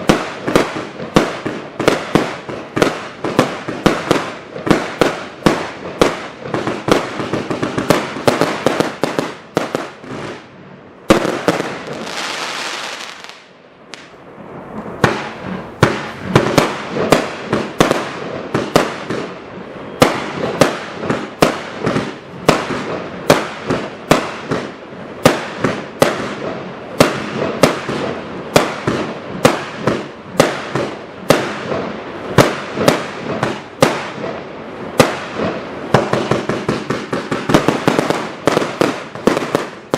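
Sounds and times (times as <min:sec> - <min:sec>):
fireworks firing shots: 0:00.0 - 0:39.9
loud firework bang: 0:11.1 - 0:19.3
firework hissing and crackling: 0:11.2 - 0:39.9.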